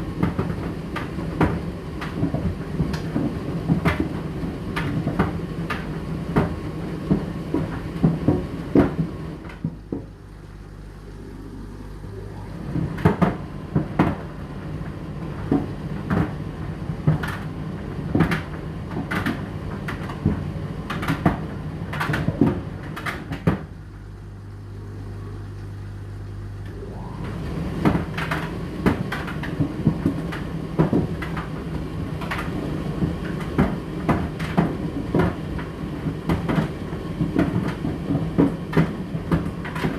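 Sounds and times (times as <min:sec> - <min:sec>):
tumble dryer motor hum: 0:00.0 - 0:39.9
load knocking in dryer drum: 0:27.2 - 0:39.9.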